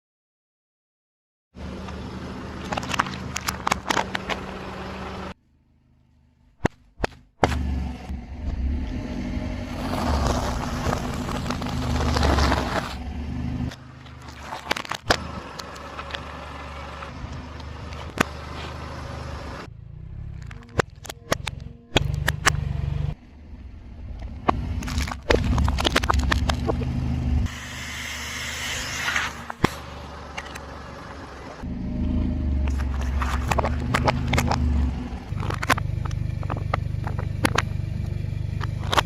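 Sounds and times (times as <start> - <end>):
car engine running: 1.6 - 39.0
tyre crunching over objects: 9.7 - 13.0, 13.7 - 15.4, 24.5 - 27.0.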